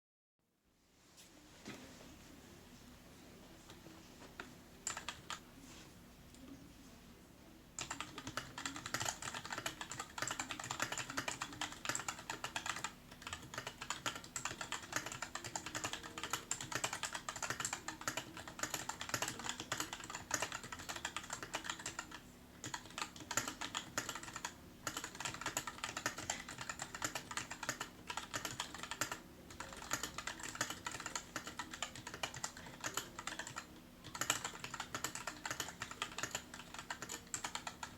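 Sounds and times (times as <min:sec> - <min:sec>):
mechanical keyboard typing: 0:04.8 - 0:05.4, 0:07.8 - 0:37.9.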